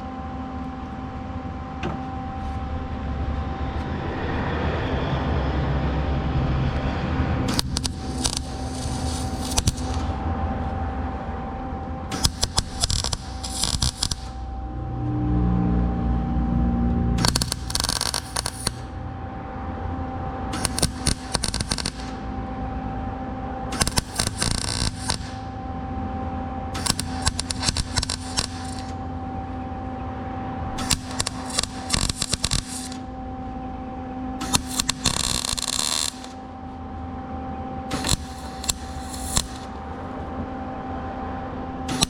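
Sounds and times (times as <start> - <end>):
steady hum: 0.0 - 42.0
welder crackling: 7.5 - 10.2, 12.1 - 14.5, 17.2 - 19.0, 20.5 - 22.3, 23.7 - 25.5, 26.8 - 29.1, 30.8 - 33.1, 34.4 - 36.5, 37.9 - 39.8.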